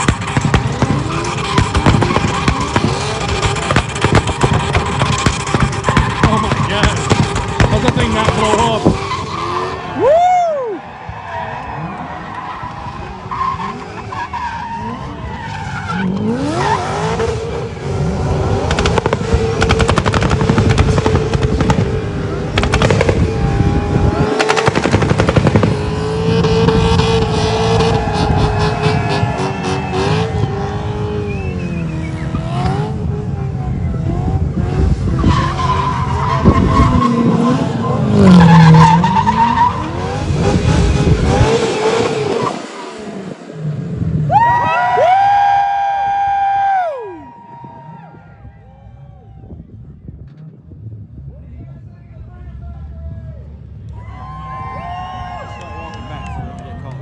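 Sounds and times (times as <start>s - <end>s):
car engine revving hard: 0.0s - 10.0s, 11.6s - 44.0s.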